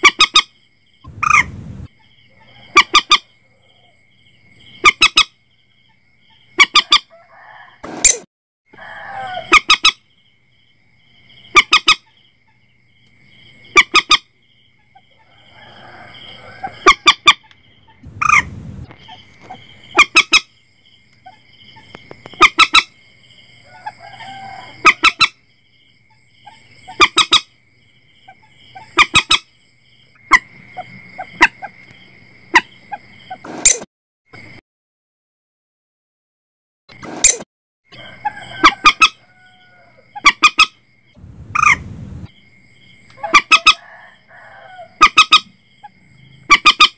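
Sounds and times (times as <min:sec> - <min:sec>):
moorhen honking calls: 0:11.5 - 0:12.1, 0:16.6 - 0:18.5, 0:43.2 - 0:43.9, 0:45.0 - 0:45.5, 0:46.5 - 0:46.9
steady high whine: 0:41.2 - 0:42.3.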